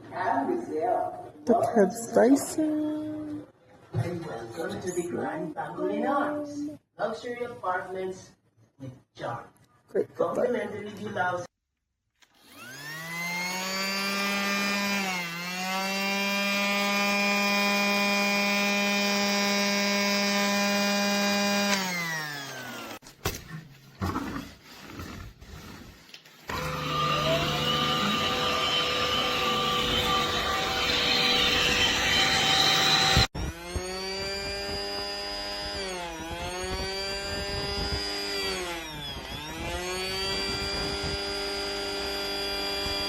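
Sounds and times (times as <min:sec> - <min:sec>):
toy vacuum motor humming: 0:12.2 - 0:23.0, 0:26.5 - 0:43.0.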